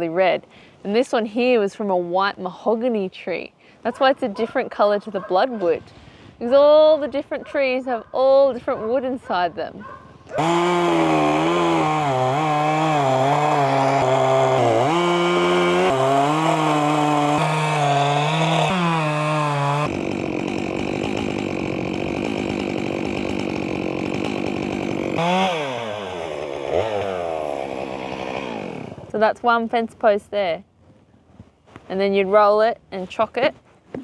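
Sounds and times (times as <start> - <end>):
chainsaw cutting wood: 10.3 - 29.2.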